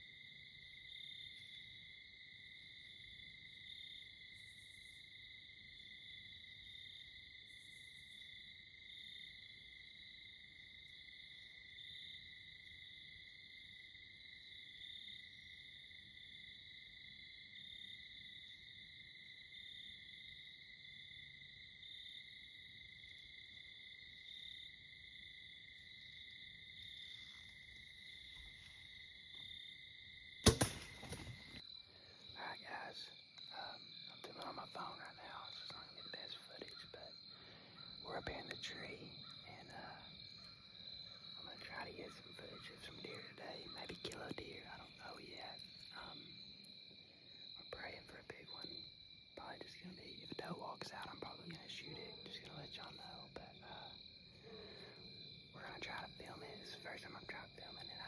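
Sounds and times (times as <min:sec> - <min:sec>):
crickets trilling: 0:00.0 - 0:58.0.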